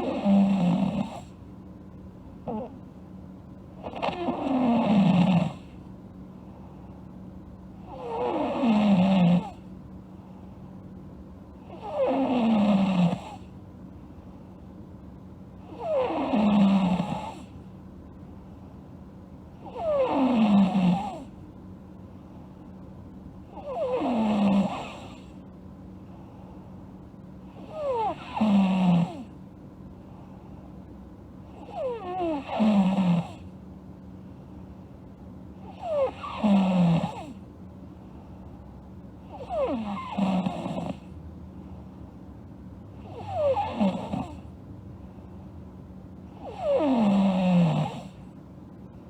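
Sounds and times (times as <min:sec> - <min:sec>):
girl snoring: 0:00.0 - 0:01.3, 0:02.4 - 0:02.8, 0:03.8 - 0:05.8, 0:07.8 - 0:09.6, 0:11.7 - 0:13.4, 0:15.6 - 0:17.5, 0:19.6 - 0:21.3, 0:23.5 - 0:25.3, 0:27.6 - 0:29.3, 0:31.6 - 0:33.4, 0:35.6 - 0:37.4, 0:39.3 - 0:41.0, 0:43.0 - 0:44.5, 0:46.4 - 0:48.2.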